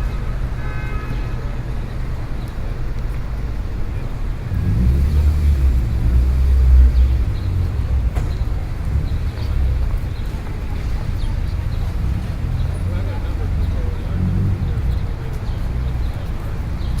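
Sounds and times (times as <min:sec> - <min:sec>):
low traffic rumble: 0:00.0 - 0:17.0
vehicle passing close by: 0:04.3 - 0:10.0.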